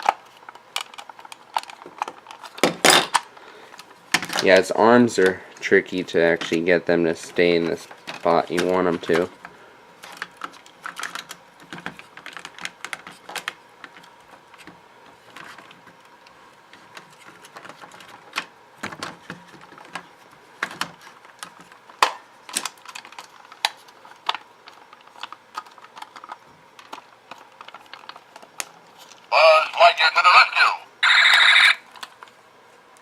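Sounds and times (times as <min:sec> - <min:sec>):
plastic parts clicking and knocking: 0:00.0 - 0:03.2, 0:07.6 - 0:09.3, 0:10.0 - 0:16.0, 0:16.7 - 0:29.2.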